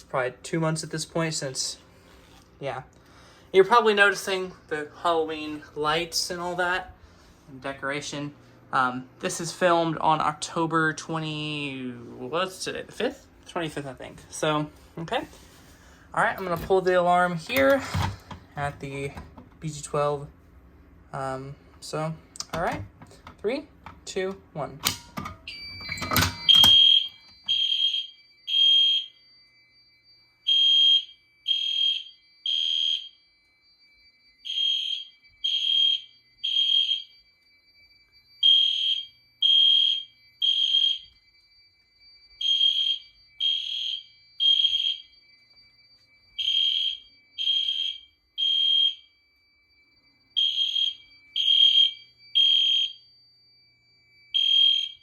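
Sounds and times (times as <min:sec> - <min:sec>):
steady high-pitched tone: 0:21.1 - 0:55.0
fire alarm horn blasts: 0:23.4 - 0:55.0.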